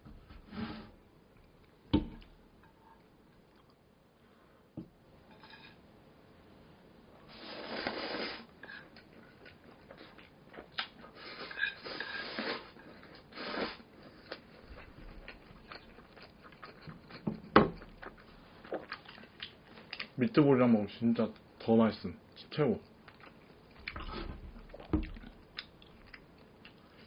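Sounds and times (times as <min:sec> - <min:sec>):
slurping noodles: 0:07.3 - 0:08.9, 0:11.1 - 0:14.3
chewing: 0:08.6 - 0:20.2, 0:22.8 - 0:27.0.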